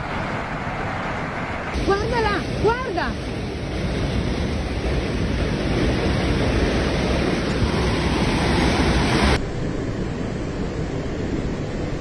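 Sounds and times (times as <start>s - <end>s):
floodwater rushing: 0.0s - 9.4s.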